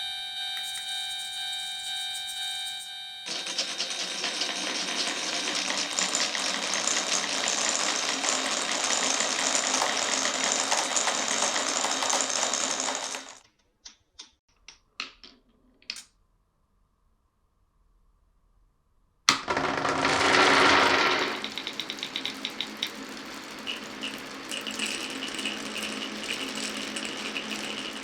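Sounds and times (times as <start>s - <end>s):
marbles rattling on wooden track: 3.3s - 13.4s, 19.3s - 28.0s
marbles clicking against wood: 3.3s - 15.3s, 19.3s - 28.0s.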